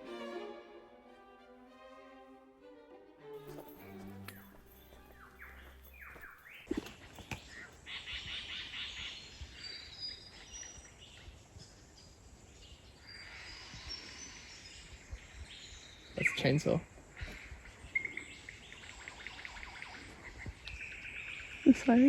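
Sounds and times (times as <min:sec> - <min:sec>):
string music: 0:00.0 - 0:06.9.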